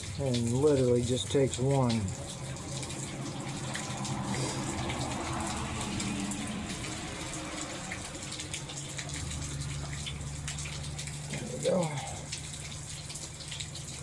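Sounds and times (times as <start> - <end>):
steady rain: 0.0 - 14.0
water dripping: 0.0 - 14.0
water running and splashing: 0.0 - 14.0.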